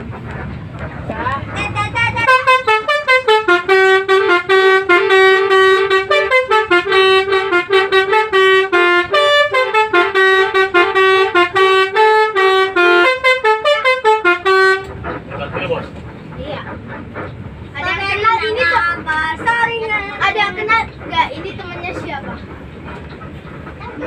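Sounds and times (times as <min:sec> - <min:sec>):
bus horn playing melody: 0:01.6 - 0:15.3.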